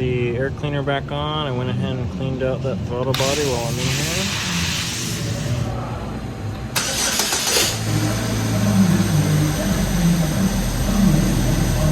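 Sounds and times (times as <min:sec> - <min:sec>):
engine running steadily: 0:02.8 - 0:11.9
engine cranking: 0:06.8 - 0:08.6.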